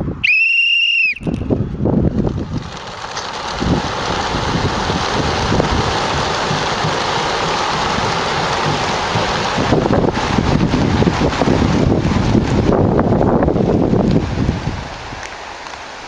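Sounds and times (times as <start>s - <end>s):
wind rumble on microphone: 0.0s - 0.3s, 1.1s - 15.4s
pigeon wingbeats rushing: 1.2s - 12.6s.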